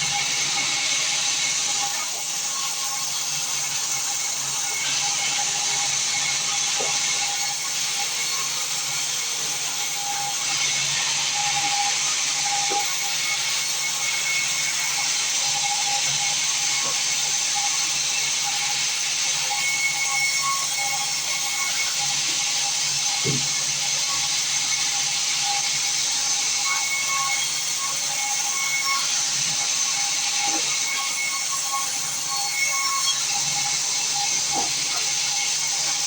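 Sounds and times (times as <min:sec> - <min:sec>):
band saw running: 0:00.0 - 0:36.0.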